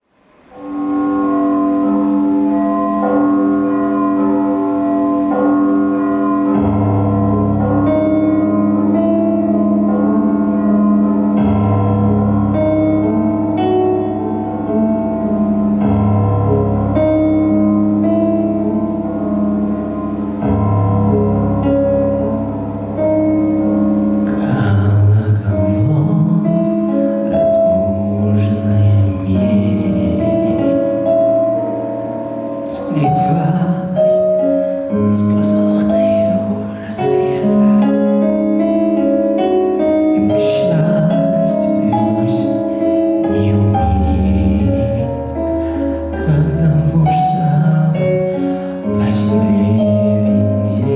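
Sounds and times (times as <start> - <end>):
sustained keyboard chords: 0.2 - 50.9
bright high strikes: 0.3 - 25.9
deep bass: 1.1 - 34.2, 40.2 - 48.2.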